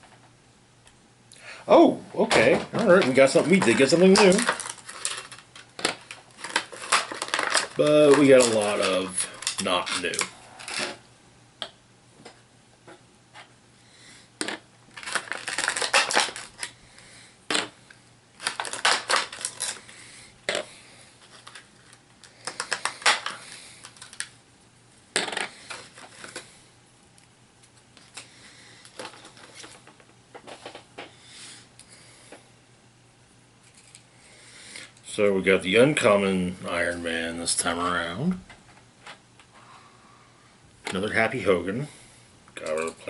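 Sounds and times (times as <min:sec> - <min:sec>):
packaging rustling: 0:02.7 - 0:11.0, 0:14.5 - 0:16.8, 0:18.4 - 0:24.4, 0:25.2 - 0:26.6, 0:27.7 - 0:30.8
plastic miniatures clicking and clattering: 0:02.8 - 0:10.8.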